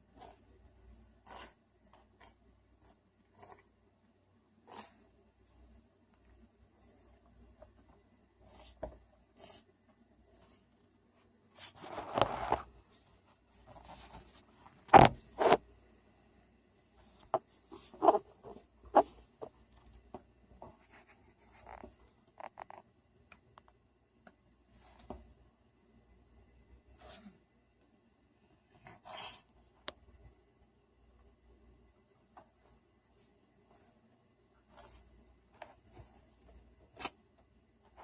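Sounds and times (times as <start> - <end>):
animal snorts: 4.7 - 5.0.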